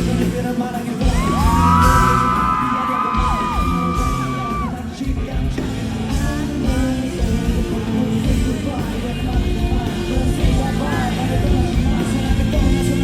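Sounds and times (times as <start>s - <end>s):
live rock band playing: 0.0s - 13.0s
audience yelling: 1.0s - 5.1s.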